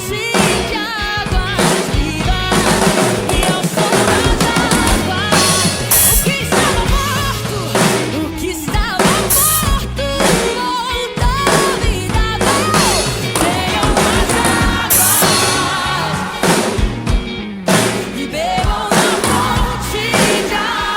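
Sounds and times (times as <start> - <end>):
drum kit playing: 0.0 - 20.9
melodic backing track: 0.0 - 20.9.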